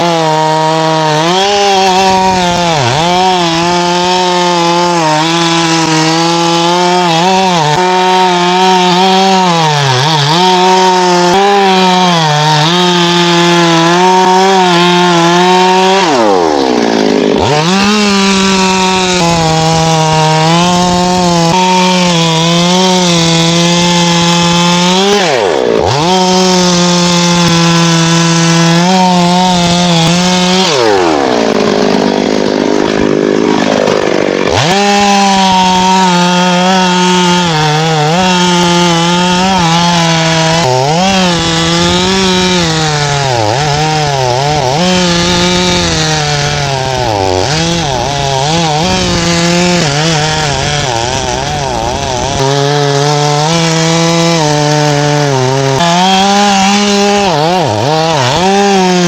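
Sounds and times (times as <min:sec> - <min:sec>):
chainsaw cutting wood: 0:00.0 - 0:59.0.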